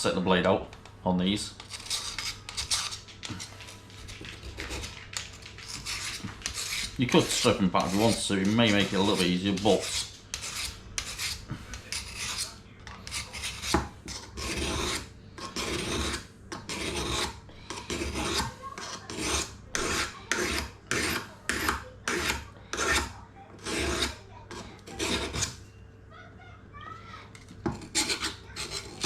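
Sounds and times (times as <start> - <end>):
blade rasping on sharpener: 1.6 - 3.0, 5.6 - 25.6, 27.4 - 29.0.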